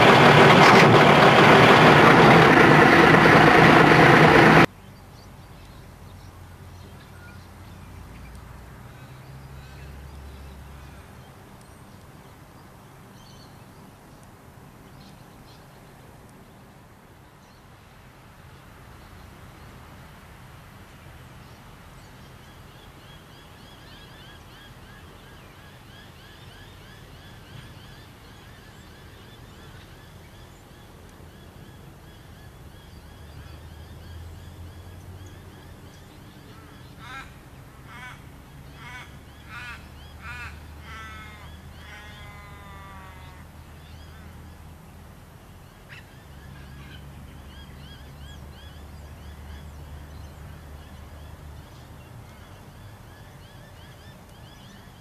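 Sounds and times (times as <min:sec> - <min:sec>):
excavator diesel engine running: 0:00.0 - 0:04.7
harsh bird calls: 0:32.1 - 0:44.4.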